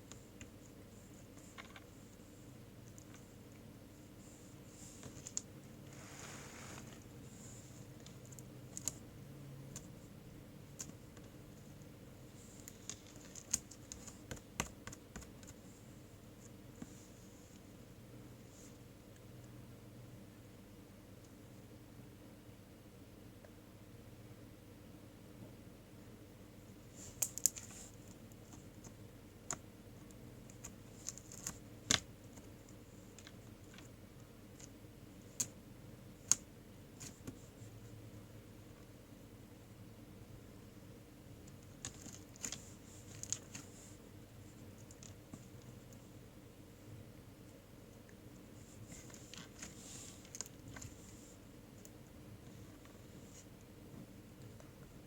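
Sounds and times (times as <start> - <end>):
faint steady hum: 0.0 - 55.0
small crackles and clicks: 5.0 - 5.5, 8.0 - 9.0, 10.8 - 15.6, 27.0 - 35.6, 36.2 - 37.4, 41.4 - 43.8, 44.6 - 46.0, 48.9 - 52.1.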